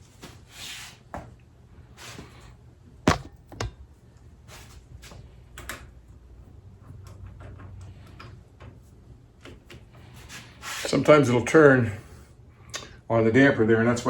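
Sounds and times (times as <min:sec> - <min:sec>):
metal fork tube clunking in vise: 0:03.1 - 0:03.8.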